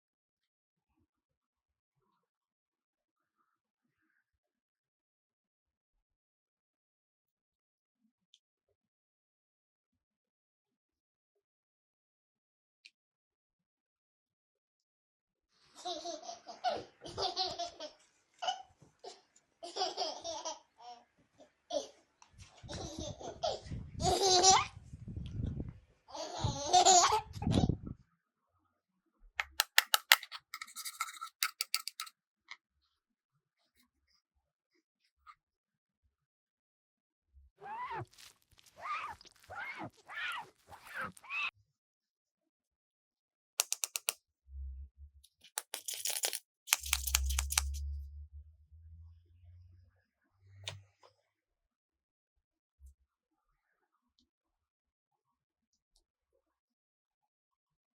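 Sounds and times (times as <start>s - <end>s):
quick run of clicks: 29.4s - 32.1s, 43.6s - 44.2s, 45.5s - 47.8s.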